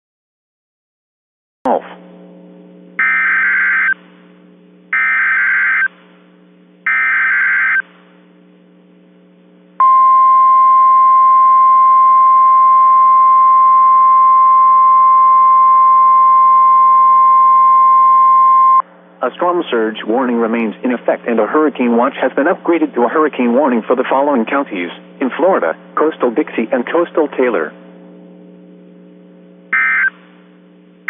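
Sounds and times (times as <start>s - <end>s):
faint hum: 1.7s - 31.0s
screechy digital data bursts: 3.0s - 4.0s, 5.0s - 5.9s, 6.9s - 7.8s
steady alarm tone: 3.0s - 4.0s, 4.9s - 6.0s, 6.8s - 7.9s, 29.8s - 30.2s.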